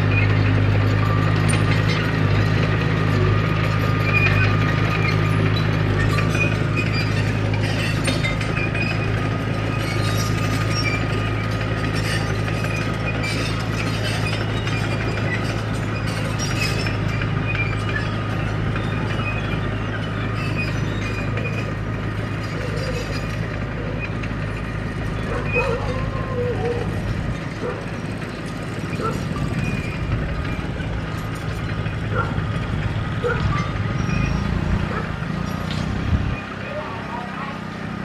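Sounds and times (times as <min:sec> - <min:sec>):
metallic clinks from tracks: 0:00.0 - 0:36.6
bulldozer diesel engine running: 0:00.0 - 0:38.0.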